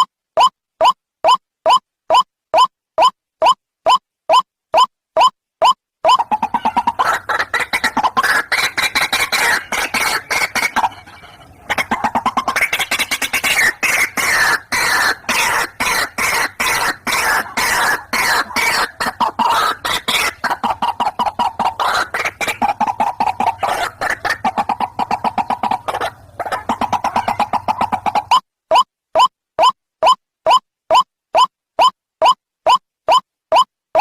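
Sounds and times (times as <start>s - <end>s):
waterhens calling harshly: 6.1s - 28.4s.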